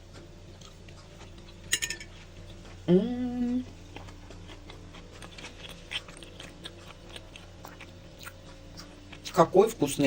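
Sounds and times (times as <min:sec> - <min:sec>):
person chewing salad: 0:00.1 - 0:02.9, 0:03.6 - 0:09.4
person humming: 0:02.8 - 0:03.7.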